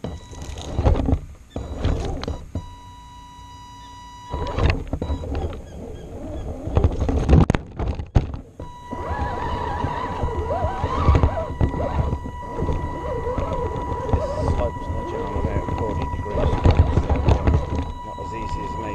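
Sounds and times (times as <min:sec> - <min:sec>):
electric motor whining: 0:00.0 - 0:07.4, 0:08.2 - 0:18.9
chassis knocks and clatters: 0:06.7 - 0:18.9.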